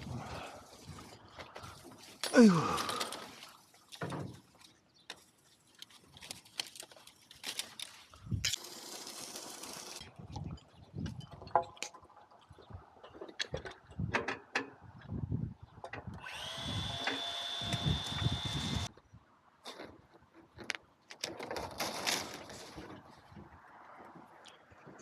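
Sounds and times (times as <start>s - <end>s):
construction knocks and clatter: 8.6s - 15.2s
power tool whining: 16.2s - 18.9s.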